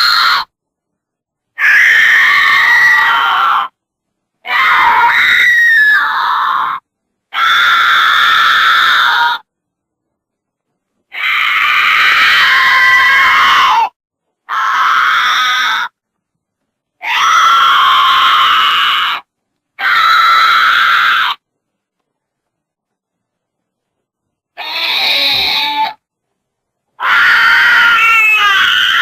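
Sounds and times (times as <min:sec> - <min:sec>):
goat screaming: 0:01.6 - 0:03.7, 0:04.5 - 0:09.4, 0:11.1 - 0:13.9, 0:17.0 - 0:19.2, 0:19.8 - 0:21.4, 0:24.6 - 0:26.0, 0:27.0 - 0:29.0.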